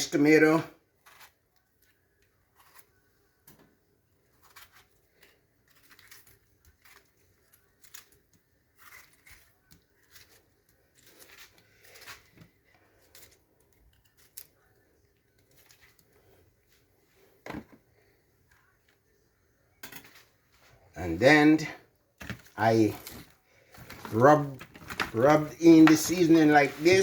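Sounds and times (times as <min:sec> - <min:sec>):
utensil clicks and rustles: 0:04.3 - 0:19.1, 0:22.2 - 0:27.0.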